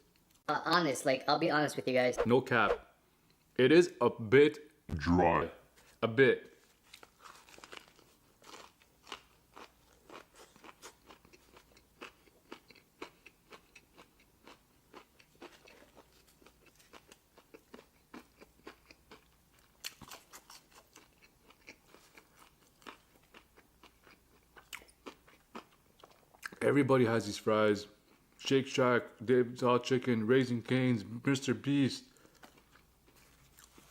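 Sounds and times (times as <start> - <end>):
person chewing crunchy food: 6.9 - 26.6, 32.2 - 33.9.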